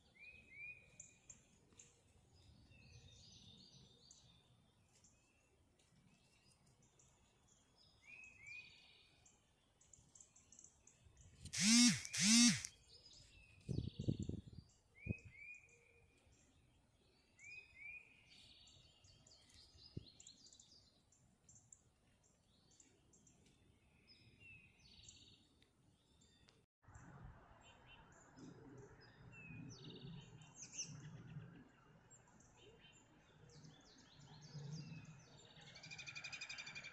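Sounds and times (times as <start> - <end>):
songbirds chirping: 0.0 - 26.6, 27.5 - 36.9
duck or goose calling: 11.6 - 12.7.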